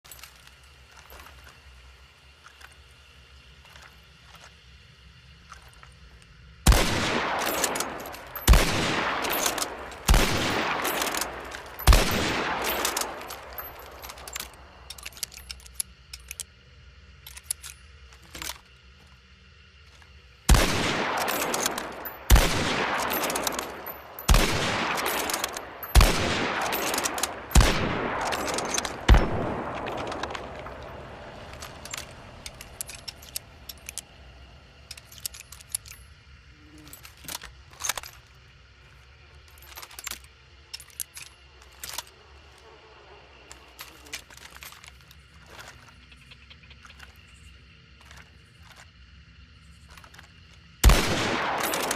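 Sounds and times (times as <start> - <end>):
rifle shots echoing: 6.7 - 14.6, 20.5 - 33.8, 50.8 - 51.9.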